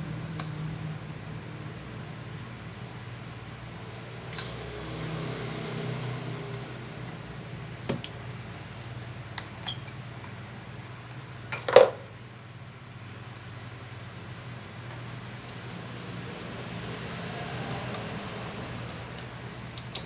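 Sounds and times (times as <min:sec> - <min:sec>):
steady low hum: 0:00.0 - 0:11.5
small tools clicking: 0:17.6 - 0:20.0.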